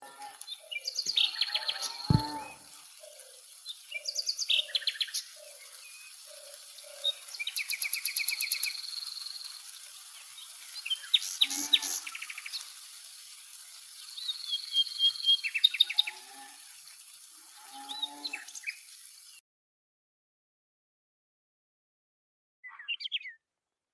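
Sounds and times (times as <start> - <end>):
birds chirping and trilling: 0.4 - 9.6, 17.6 - 18.8, 22.6 - 23.4
sharp knock: 2.1 - 2.4.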